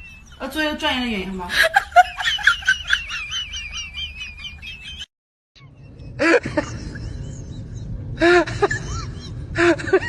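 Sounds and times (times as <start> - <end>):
bird chirping rapidly: 0.0 - 1.0.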